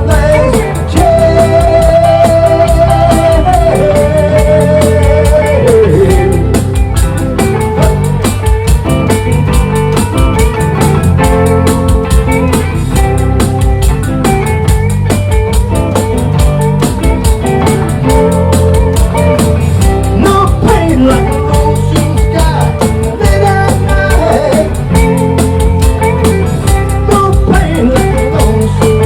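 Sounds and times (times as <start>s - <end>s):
live band playing: 0.0s - 29.0s.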